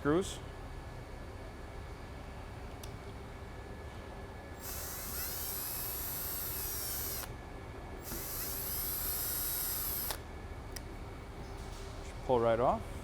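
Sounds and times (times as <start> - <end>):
power drill whining: 4.6 - 7.3, 8.0 - 10.2.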